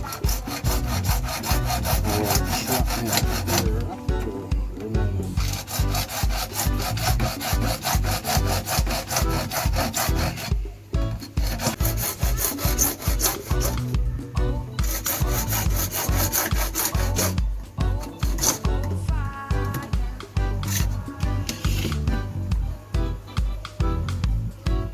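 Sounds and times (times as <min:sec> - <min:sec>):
saw cutting pipe: 0:00.0 - 0:04.0, 0:05.2 - 0:14.1, 0:14.7 - 0:19.0, 0:20.5 - 0:22.1.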